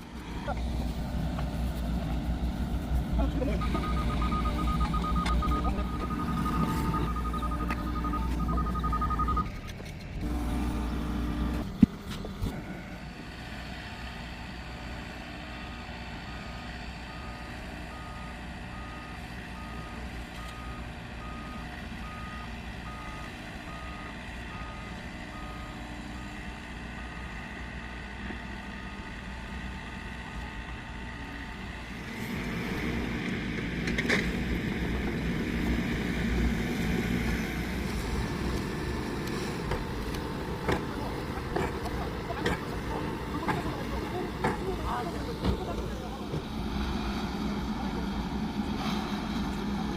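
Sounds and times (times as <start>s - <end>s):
engine rumbling: 0.0s - 49.9s
reversing alarm beeping: 3.4s - 11.6s.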